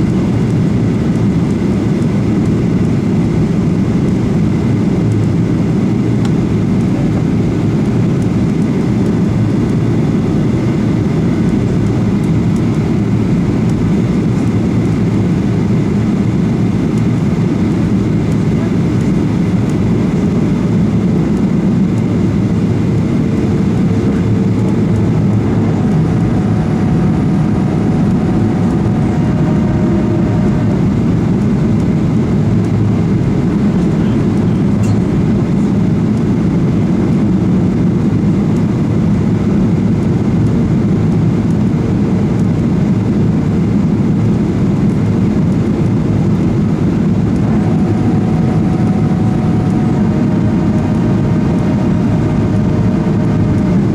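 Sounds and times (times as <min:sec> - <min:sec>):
faint steady whines: 0:00.0 - 0:53.9
jet engine drone: 0:00.0 - 0:53.9
rushing airflow: 0:05.1 - 0:37.1, 0:44.0 - 0:53.9.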